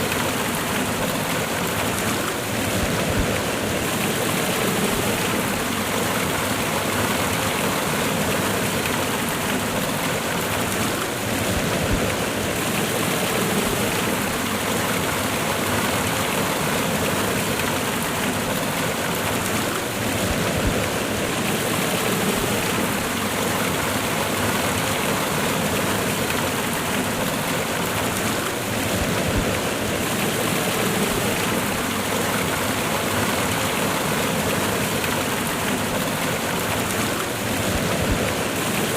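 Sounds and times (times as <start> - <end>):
water rushing over rocks: 0.0 - 38.9.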